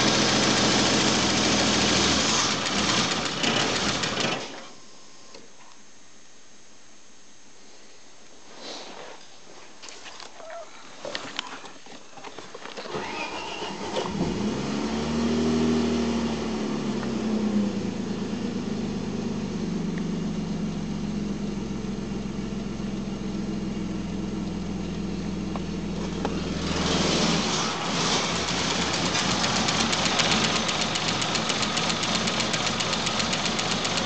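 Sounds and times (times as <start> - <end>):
starter cranking engine: 0.1 - 4.6, 12.9 - 14.4, 26.9 - 34.0
car engine idling roughly: 28.3 - 34.0.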